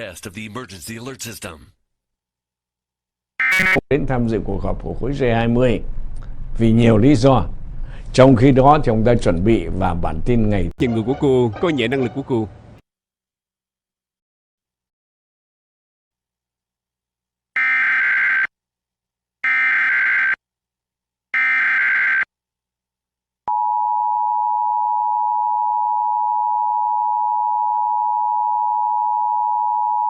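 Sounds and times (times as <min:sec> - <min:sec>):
digital data tone bursts: 0:03.4 - 0:03.8
two-tone attention signal: 0:03.4 - 0:03.8.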